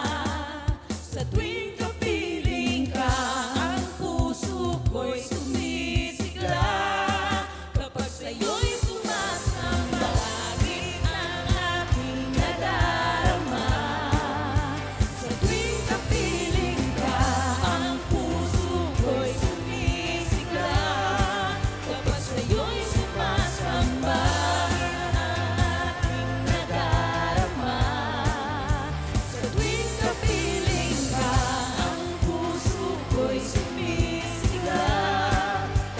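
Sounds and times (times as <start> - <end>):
steady drum beat: 0.0 - 35.9
person singing: 1.4 - 35.9
bass line: 9.1 - 35.9.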